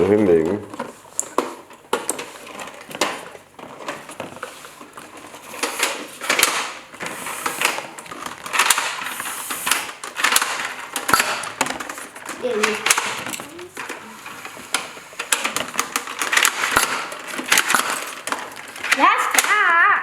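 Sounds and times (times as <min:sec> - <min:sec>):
plastic toy parts clicking: 0:07.4 - 0:19.6.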